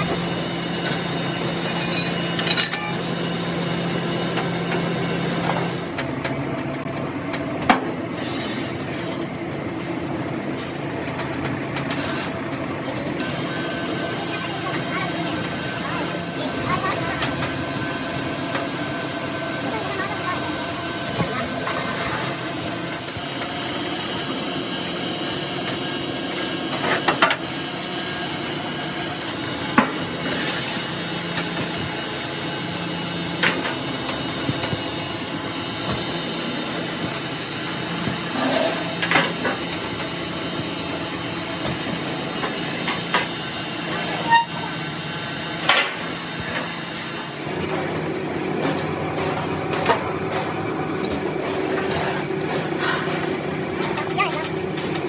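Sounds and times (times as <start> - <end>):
steady engine hum: 0.0 - 55.0.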